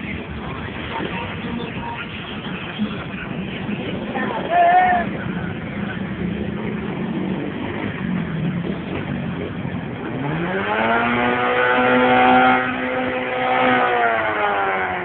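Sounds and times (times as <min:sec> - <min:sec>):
vehicle engine revving: 0:05.0 - 0:15.0.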